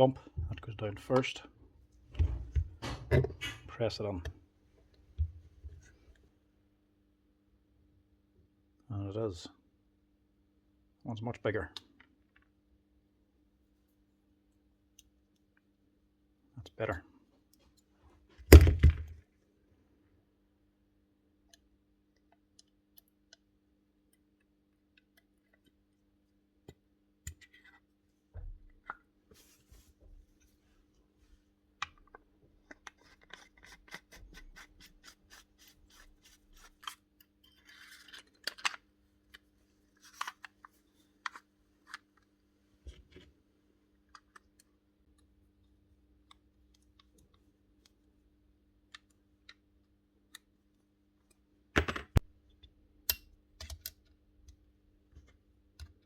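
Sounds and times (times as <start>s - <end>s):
small parts clicking and scraping: 35.0s - 39.4s.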